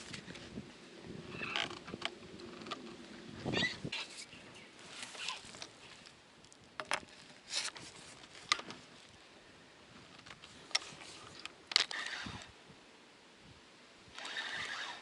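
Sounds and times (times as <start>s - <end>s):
fishing tackle clicks and knocks: 6.4s - 7.2s.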